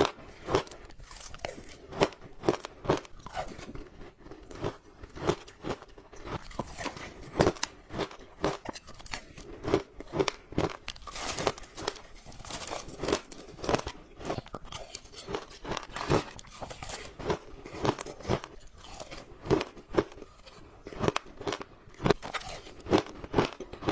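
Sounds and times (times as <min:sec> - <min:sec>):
ice being chewed: 0:00.0 - 0:23.9.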